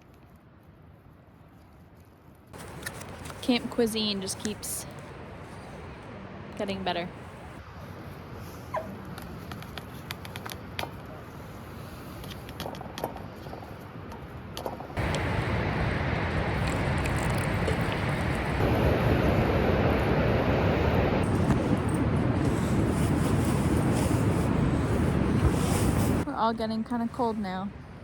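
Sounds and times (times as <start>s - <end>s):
faint clicks and crackles: 8.9s - 11.2s, 12.0s - 18.7s
loud steady rushing noise: 15.0s - 26.3s.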